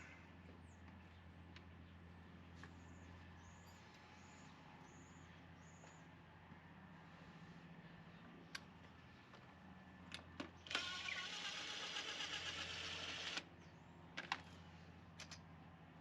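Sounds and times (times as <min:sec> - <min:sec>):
power drill running: 0:10.7 - 0:13.5.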